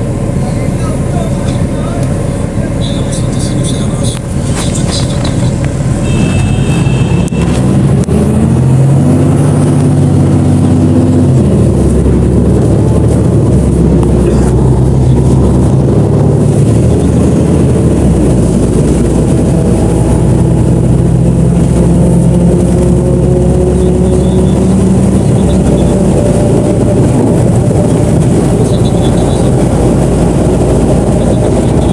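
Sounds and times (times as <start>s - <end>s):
bus engine droning: 0.0s - 31.9s.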